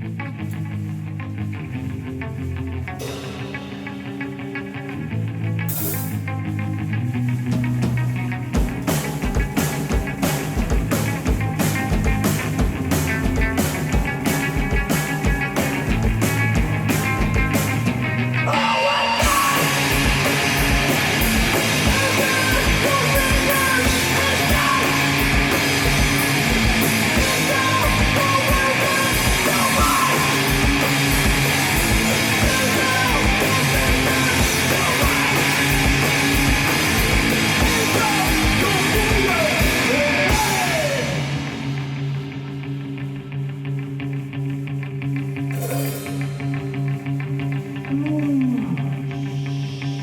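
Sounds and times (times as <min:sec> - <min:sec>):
live rock band: 0:00.0 - 0:50.0
guitar ringing: 0:02.5 - 0:29.4
cymbals crashing: 0:03.0 - 0:04.7, 0:45.6 - 0:46.8
drums pounding: 0:03.0 - 0:05.0, 0:07.5 - 0:18.4, 0:19.2 - 0:42.9.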